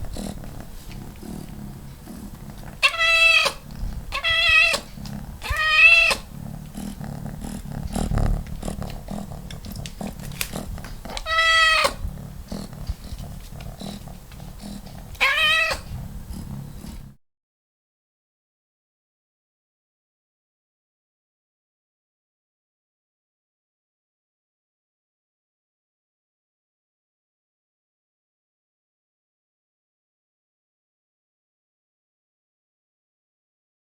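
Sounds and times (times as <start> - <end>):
low steady background noise: 0.0 - 17.2
cat meowing: 2.8 - 6.3, 11.1 - 12.1, 15.1 - 16.0.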